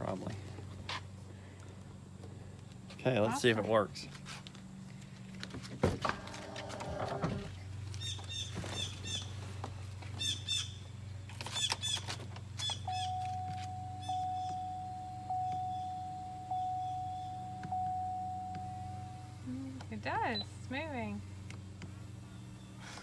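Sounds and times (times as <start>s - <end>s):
birds chirping: 7.5s - 23.0s
low steady hum: 12.4s - 23.0s
electronic chime tone: 12.9s - 19.4s.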